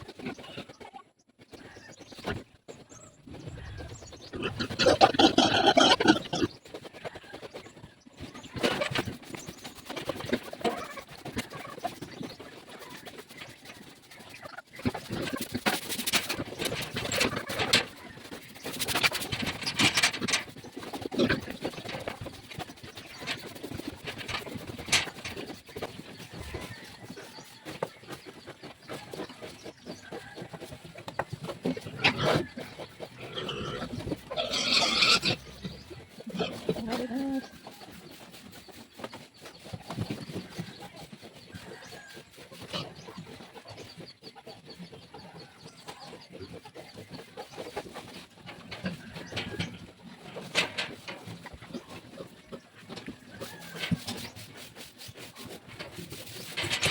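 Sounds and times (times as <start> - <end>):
high chirps or clucks: 0.0 - 56.9
pigs grunting and squealing: 3.5 - 6.7, 18.9 - 22.8, 31.6 - 37.8.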